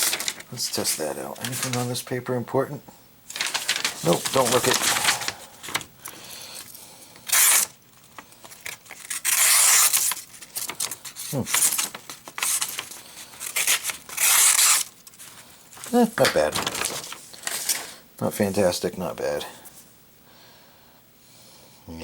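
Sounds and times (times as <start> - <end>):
knife slicing paper: 7.3 - 7.7, 8.6 - 14.9.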